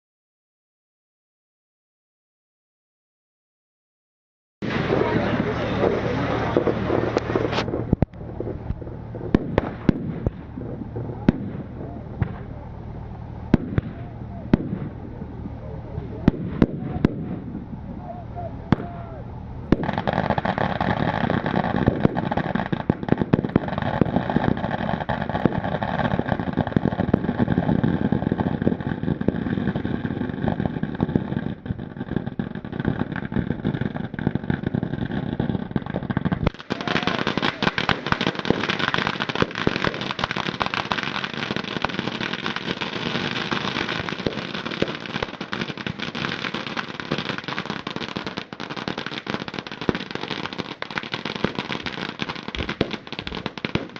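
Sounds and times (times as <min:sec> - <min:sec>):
low rumble: 0:04.6 - 0:37.2
fireworks cracking and banging: 0:04.6 - 0:53.9.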